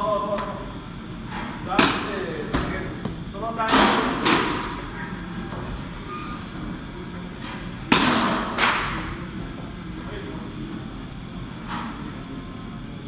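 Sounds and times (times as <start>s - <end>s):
ball striking with ringing thump: 1.9s - 4.8s.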